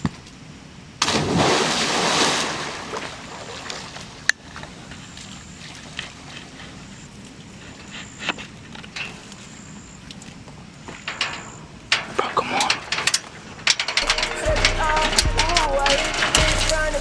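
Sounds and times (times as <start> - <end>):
person splashing into pool: 1.0 - 4.0.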